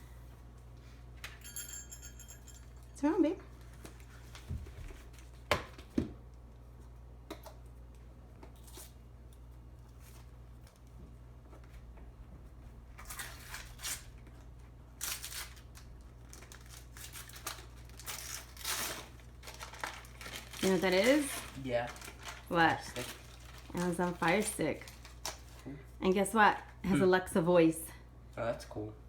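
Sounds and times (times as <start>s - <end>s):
gift wrapping rustling and tearing: 13.0s - 14.4s, 15.0s - 25.6s.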